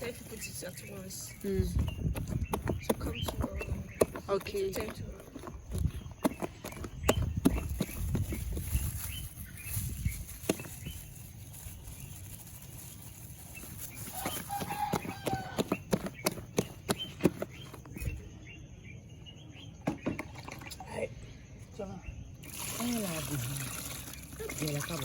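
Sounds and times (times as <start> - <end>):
batter beaten in a bowl: 1.8 - 8.6.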